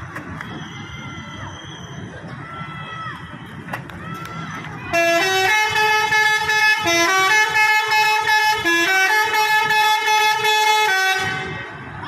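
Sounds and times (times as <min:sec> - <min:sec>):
multi-tone bus air horn tune: 0:04.9 - 0:11.8.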